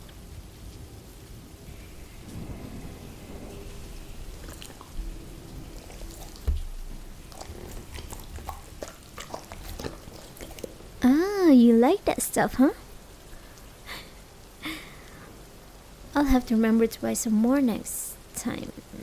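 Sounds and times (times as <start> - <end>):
steady rain: 0.0 - 19.0
thunder rumble: 1.3 - 11.1
dog eating: 1.7 - 11.3.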